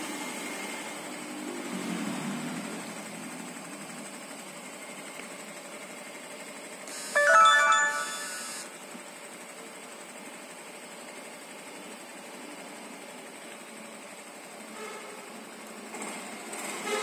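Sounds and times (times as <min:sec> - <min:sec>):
electronic jingle: 0:07.2 - 0:08.7.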